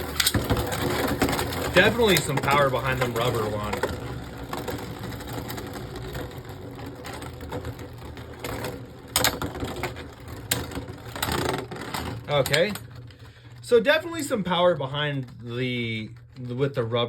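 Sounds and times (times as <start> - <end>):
spinning tops clacking: 0.0 - 12.9
spinning tops whirring and grinding: 0.0 - 17.0.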